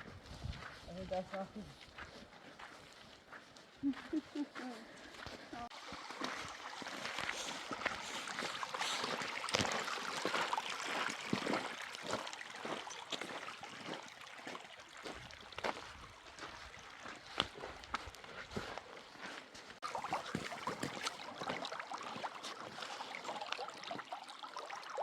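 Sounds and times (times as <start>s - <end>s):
water sloshing and trickling: 5.1s - 25.0s.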